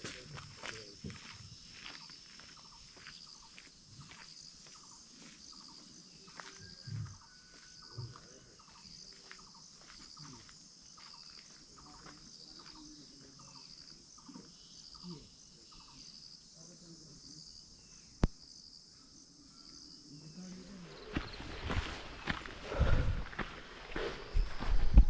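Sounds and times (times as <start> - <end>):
insects chirping: 0.0 - 25.0.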